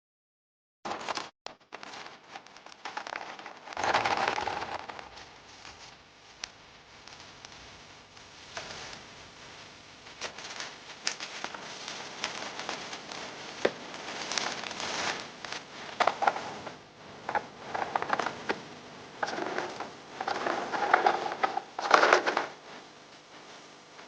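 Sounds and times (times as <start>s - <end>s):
packaging crinkling and rustling: 1.7s - 5.9s, 10.1s - 18.6s, 19.2s - 22.7s.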